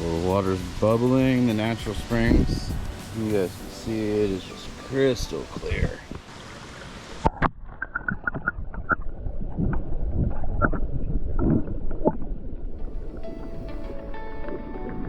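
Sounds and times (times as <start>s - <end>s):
music: 0.0s - 6.2s, 12.8s - 15.0s
spring water bubbling: 0.0s - 15.0s.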